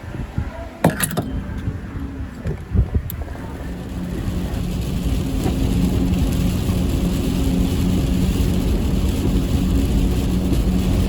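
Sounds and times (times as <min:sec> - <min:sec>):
car engine and road hum: 0:00.0 - 0:11.0
rain hissing: 0:02.9 - 0:11.0
tyre spray: 0:03.2 - 0:11.0.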